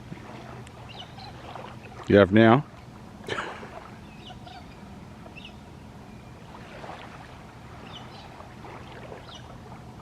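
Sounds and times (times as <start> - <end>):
water washing on shore: 0.0 - 5.2, 6.4 - 10.0
wind: 0.0 - 10.0
faint high bird chirps: 0.9 - 1.4, 4.0 - 6.4, 7.8 - 8.3.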